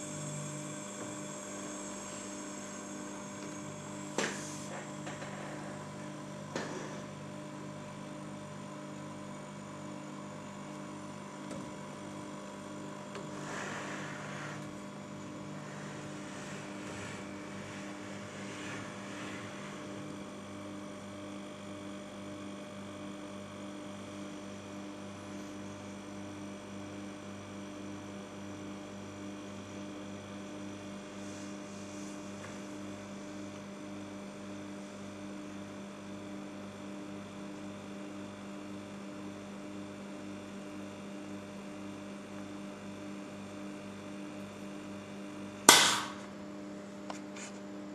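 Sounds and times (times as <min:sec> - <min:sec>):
compressor humming: 0:00.0 - 0:27.6.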